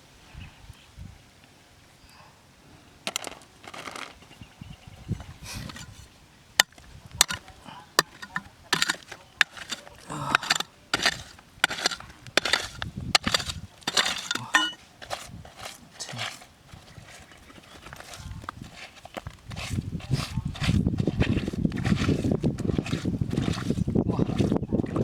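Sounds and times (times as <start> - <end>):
hand tool digging soil and stones: 3.1 - 4.4, 5.0 - 25.0.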